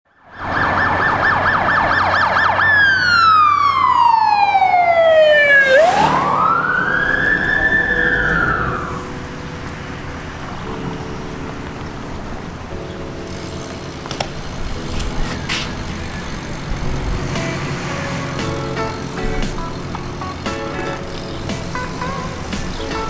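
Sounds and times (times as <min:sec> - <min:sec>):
electronic siren: 0:00.2 - 0:09.2.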